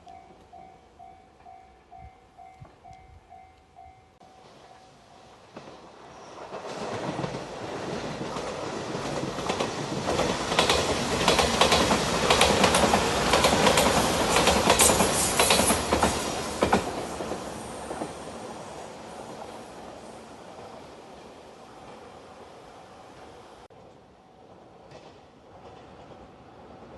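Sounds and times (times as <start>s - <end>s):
electric train rumble: 0.1s - 23.8s
wheels clacking over rail joints: 5.5s - 18.3s.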